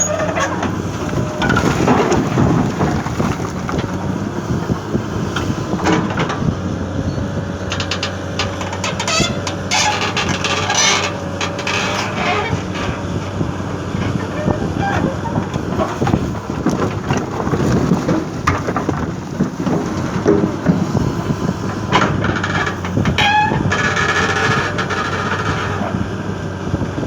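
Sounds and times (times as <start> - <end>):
clanks and rattles: 0.0 - 26.0
excavator diesel engine: 0.0 - 27.0
soil dumping rush: 0.2 - 6.5, 8.7 - 22.3.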